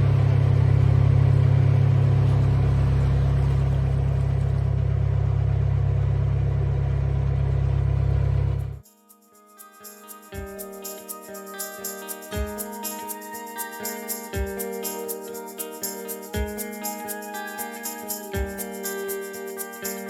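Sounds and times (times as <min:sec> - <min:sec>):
diesel engine droning: 0:00.0 - 0:08.8.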